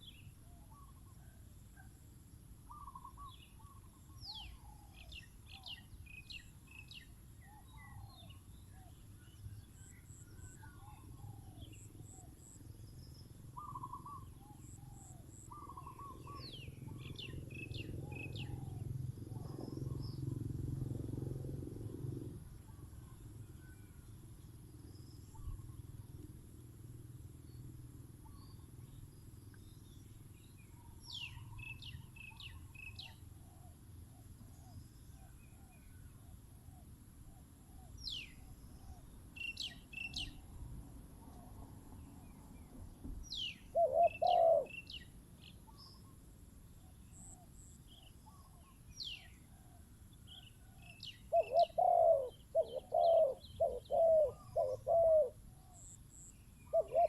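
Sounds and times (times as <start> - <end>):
small birds chirping: 2.7 - 20.8, 27.3 - 49.6, 50.2 - 57.0
doves cooing: 43.7 - 44.8, 50.7 - 57.0.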